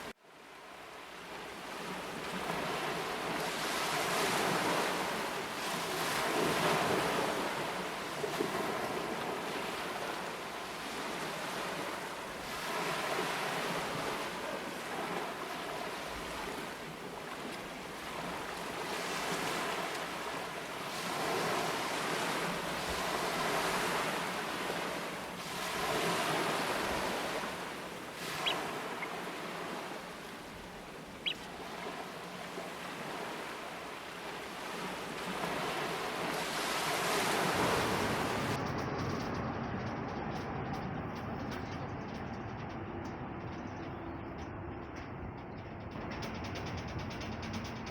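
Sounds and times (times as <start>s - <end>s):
surf washing on shore: 0.0s - 39.0s
wind: 0.0s - 47.9s
high piping bird call: 28.2s - 29.2s, 31.2s - 31.5s.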